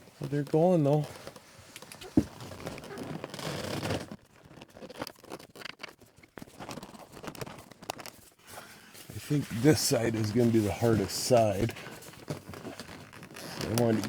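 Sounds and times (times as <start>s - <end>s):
small clicks and rubs: 0.1s - 14.0s
heavy curtain rustling and scraping: 8.4s - 14.0s.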